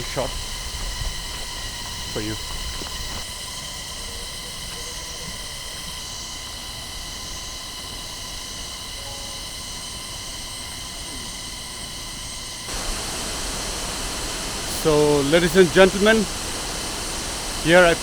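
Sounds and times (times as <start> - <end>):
drone propeller whine: 0.0 - 18.0
waterfall rushing: 12.7 - 18.0.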